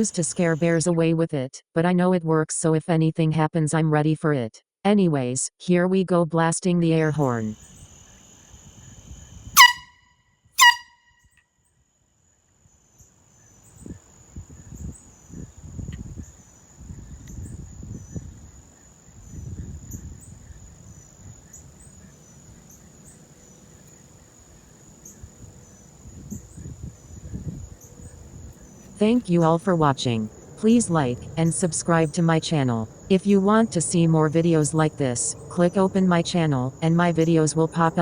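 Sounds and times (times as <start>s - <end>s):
crickets trilling: 0.0s - 0.8s, 7.1s - 9.9s, 11.9s - 38.0s
air horn blasts: 9.6s - 11.0s.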